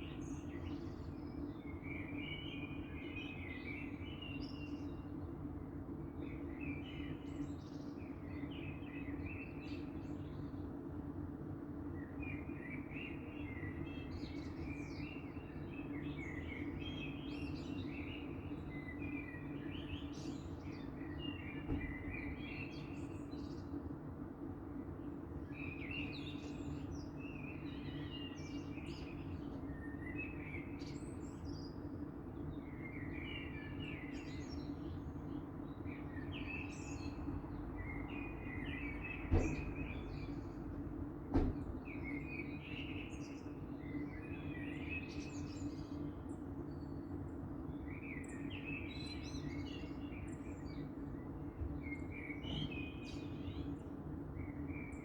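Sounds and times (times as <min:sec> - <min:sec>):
birds singing: 0:00.0 - 0:11.2, 0:11.8 - 0:24.0, 0:24.8 - 0:55.0.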